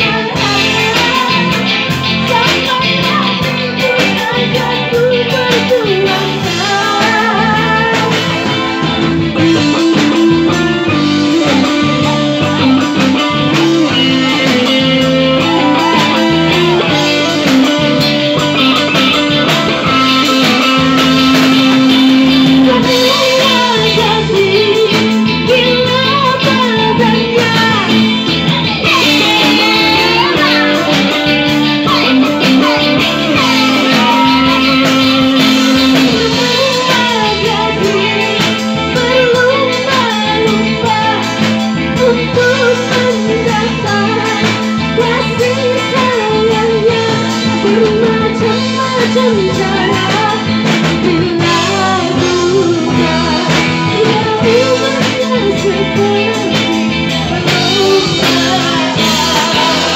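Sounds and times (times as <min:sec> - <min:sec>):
guitar: 0:00.0 - 0:59.9
live band music: 0:00.0 - 0:59.9.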